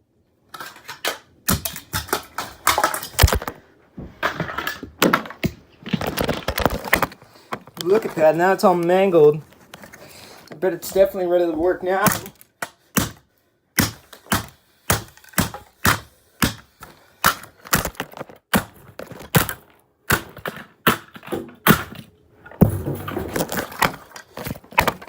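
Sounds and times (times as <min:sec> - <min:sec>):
blows smashing plastic: 0:00.6 - 0:03.6, 0:11.9 - 0:25.0.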